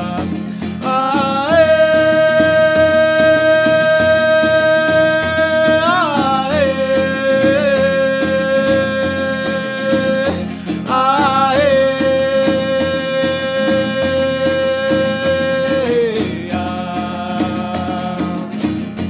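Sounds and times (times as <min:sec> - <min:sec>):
acoustic guitar strumming: 0:00.0 - 0:19.0.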